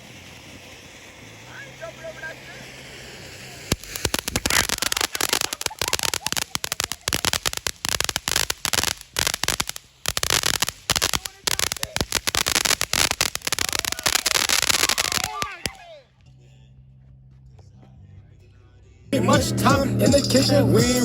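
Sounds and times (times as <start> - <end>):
firecrackers popping: 0.0 - 16.0.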